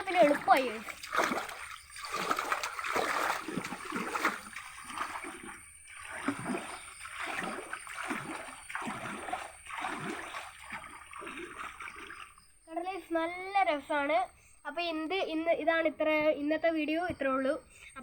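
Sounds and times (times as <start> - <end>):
water splashing from hand paddling: 0.0 - 12.4.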